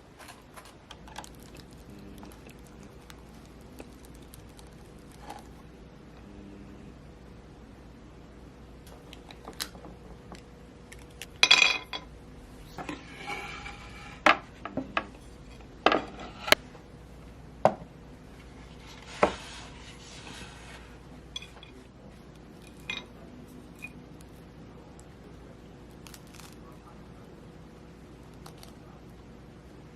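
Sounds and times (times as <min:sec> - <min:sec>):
utensils clinking on dishes: 0:11.4 - 0:12.1, 0:22.6 - 0:24.0
utensil scraping dishes: 0:12.8 - 0:16.6.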